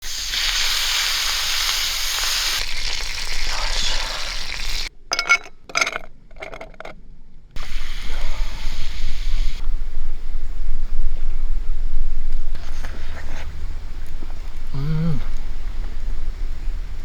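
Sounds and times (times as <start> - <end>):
food sizzling in a pan: 0.0 - 4.9, 7.6 - 9.6
low wind rumble: 6.2 - 17.0.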